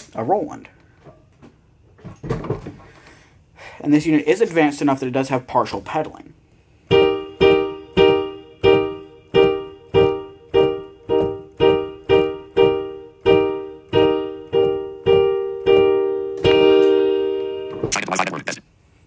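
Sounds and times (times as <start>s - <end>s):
piano chord strikes: 6.9s - 18.0s.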